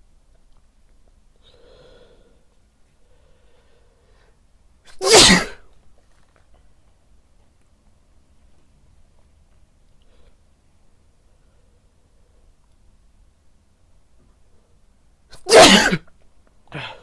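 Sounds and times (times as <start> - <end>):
faint breaths: 1.4 - 4.7
man sneezing: 4.9 - 5.6, 15.3 - 16.0, 16.7 - 17.0.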